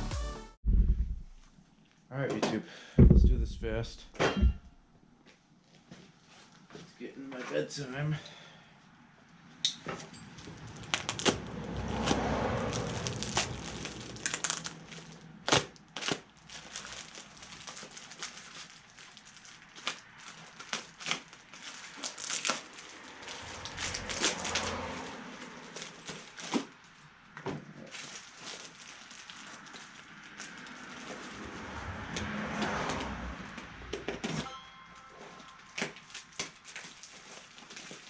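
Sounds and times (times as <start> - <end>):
crinkling rustle: 10.2 - 32.0, 35.3 - 38.0.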